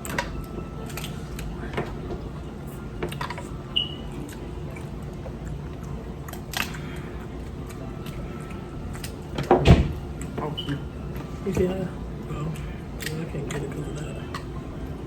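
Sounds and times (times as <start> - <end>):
low steady hum: 0.0 - 15.0
chewing and lip-smacking: 3.1 - 9.3.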